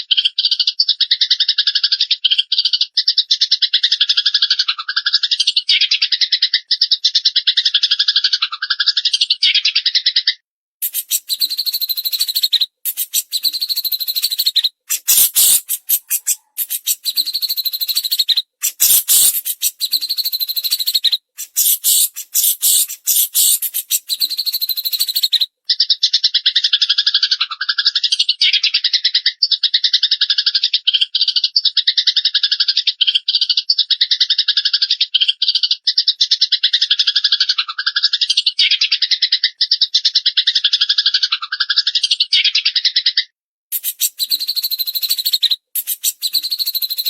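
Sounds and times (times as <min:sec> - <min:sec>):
songbird fast rattling trill: 0:10.8 - 0:25.4, 0:43.7 - 0:47.0
songbird rapid high chattering: 0:10.8 - 0:25.5, 0:43.7 - 0:47.0.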